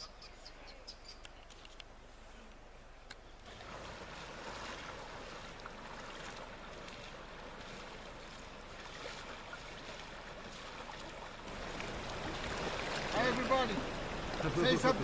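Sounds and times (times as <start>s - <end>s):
river water rushing: 3.4s - 15.0s.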